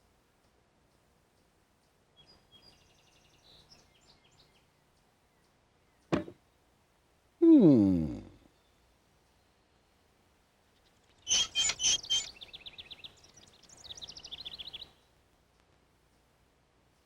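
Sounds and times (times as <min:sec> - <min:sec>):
bird chirps: 0:11.2 - 0:14.9
high twittering bird trill: 0:11.3 - 0:14.8.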